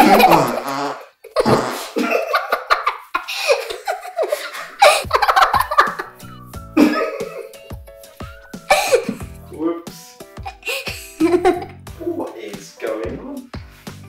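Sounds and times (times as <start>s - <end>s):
music: 0.0s - 1.1s, 4.5s - 14.0s
children laughing and giggling: 0.0s - 7.6s, 10.4s - 11.8s.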